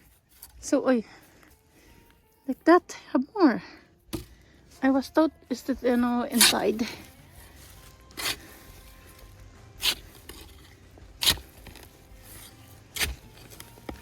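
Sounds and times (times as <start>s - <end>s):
faint music: 0.0s - 14.0s
scraping in garden soil: 4.7s - 14.0s.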